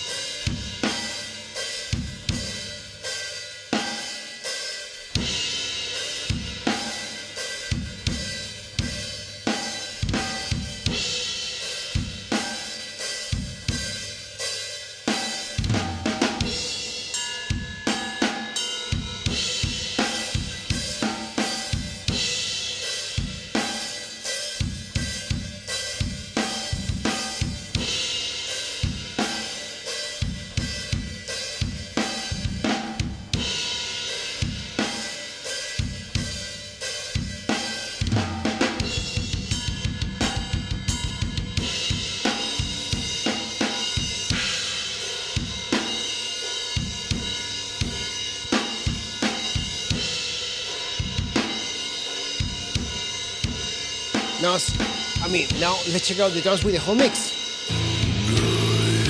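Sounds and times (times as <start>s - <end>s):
metal drum kit: 0.0s - 59.0s
fast double bass kick drum: 57.7s - 59.0s.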